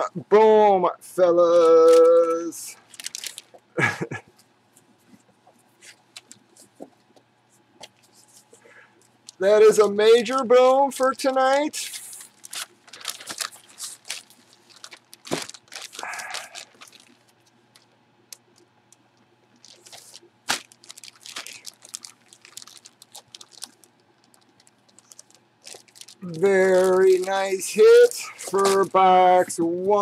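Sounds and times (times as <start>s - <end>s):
packaging crinkling: 1.8s - 3.6s, 7.8s - 29.4s.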